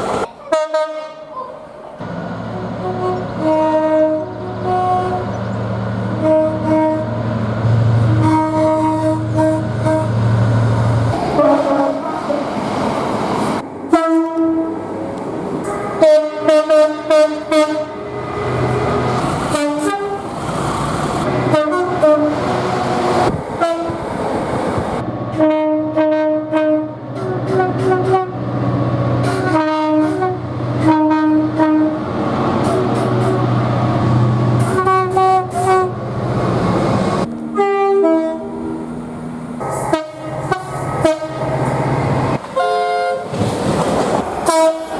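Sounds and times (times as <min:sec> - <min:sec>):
train horn blasts: 0:00.5 - 0:01.4, 0:02.5 - 0:05.4, 0:06.2 - 0:10.2, 0:11.4 - 0:12.5, 0:13.9 - 0:14.8, 0:15.6 - 0:20.3, 0:21.2 - 0:24.0, 0:25.3 - 0:28.4, 0:29.2 - 0:33.4, 0:34.6 - 0:36.0, 0:37.3 - 0:38.7, 0:39.6 - 0:41.6, 0:42.6 - 0:43.3, 0:44.4 - 0:44.9.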